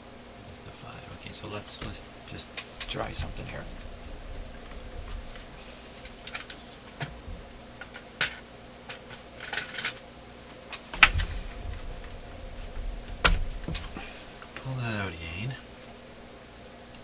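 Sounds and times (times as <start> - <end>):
clicks and knocks of handled parts: 4.6 - 10.0, 10.7 - 14.7.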